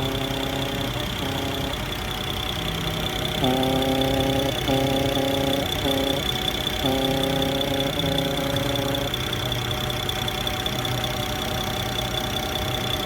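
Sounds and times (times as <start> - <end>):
pitched humming drone: 0.0 - 10.4
car engine idling: 0.0 - 13.0
steady high whine: 0.0 - 13.0.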